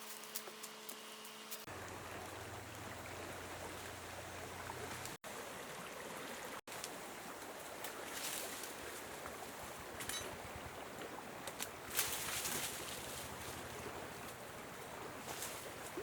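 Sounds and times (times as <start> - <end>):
flowing water rushing: 1.7 - 16.0.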